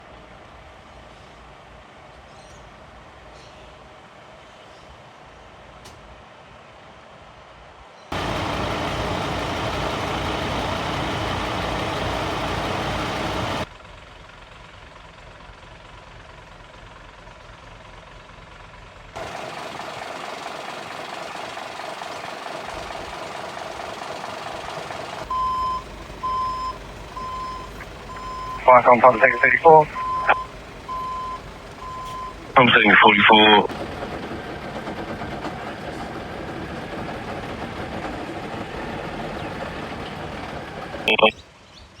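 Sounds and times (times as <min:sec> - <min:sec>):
short high beeps: 0:26.4 - 0:32.3.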